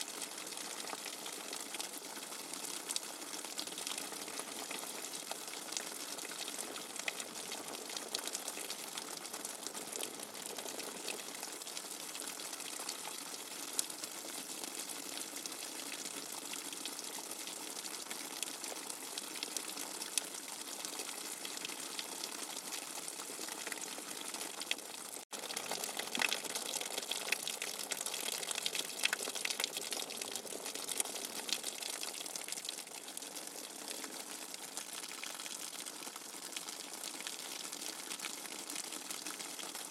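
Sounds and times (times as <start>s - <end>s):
gushing water: 0.0s - 39.9s.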